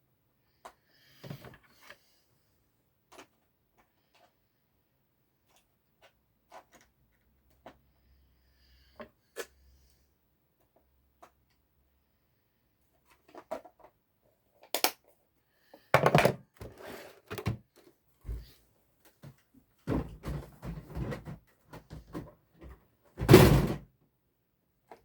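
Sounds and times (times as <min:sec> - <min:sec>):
hard objects knocking and clunking: 0:16.0 - 0:17.7.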